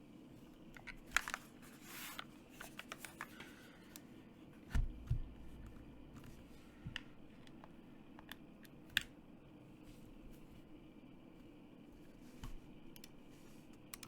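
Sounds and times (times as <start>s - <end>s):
deep keyboard thocks: 4.7s - 6.3s
mechanical keyboard keystrokes: 13.8s - 14.0s.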